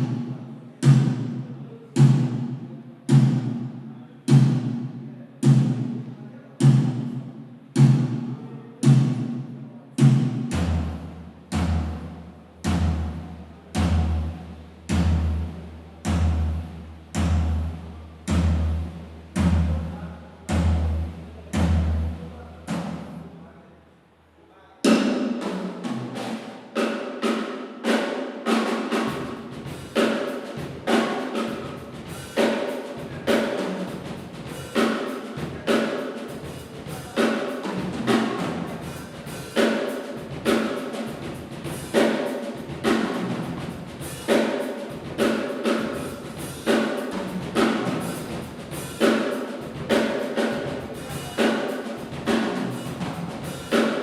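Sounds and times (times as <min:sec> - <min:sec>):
drum kit playing: 0:00.0 - 0:23.3, 0:24.8 - 0:54.0
bass drum pounding: 0:10.0 - 0:23.1.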